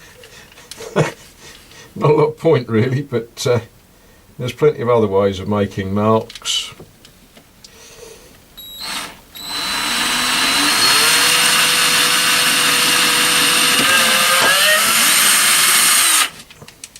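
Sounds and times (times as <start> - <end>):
electric drill whining: 8.6 - 16.5.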